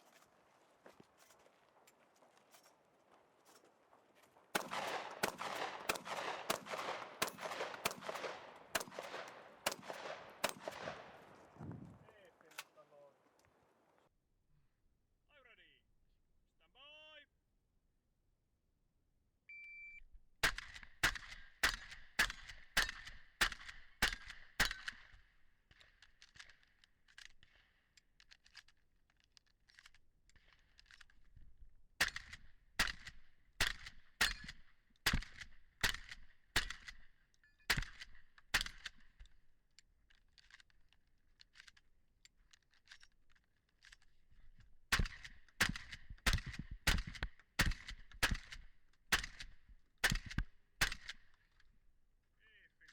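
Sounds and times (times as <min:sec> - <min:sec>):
shells being loaded: 0:00.0 - 0:11.6, 0:12.3 - 0:13.6, 0:20.4 - 0:51.8
shotgun firing quick shots: 0:04.5 - 0:11.6, 0:20.4 - 0:25.0, 0:32.0 - 0:37.0, 0:37.7 - 0:39.0, 0:44.9 - 0:51.2
shot timer beep: 0:19.5 - 0:20.0.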